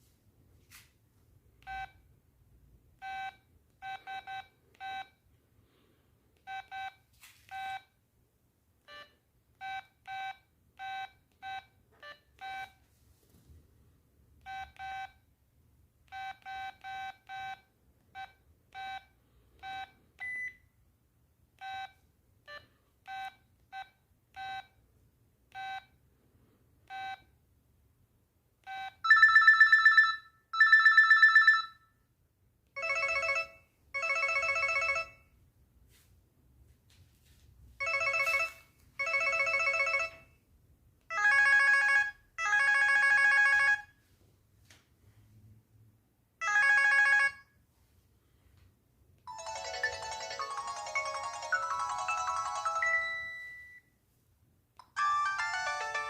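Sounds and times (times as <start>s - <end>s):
phone ringtone: 28.7s - 31.9s, 32.8s - 35.3s, 37.8s - 40.4s, 41.1s - 43.9s, 46.4s - 47.5s, 49.3s - 53.9s, 54.8s - 56.0s.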